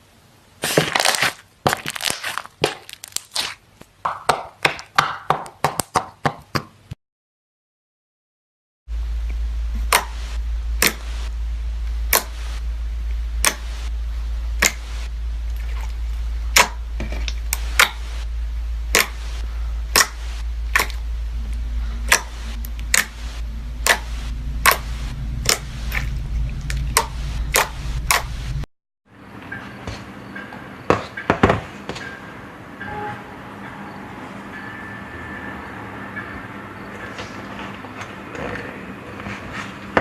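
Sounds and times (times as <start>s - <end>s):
steady low hum: 8.9s - 40.0s.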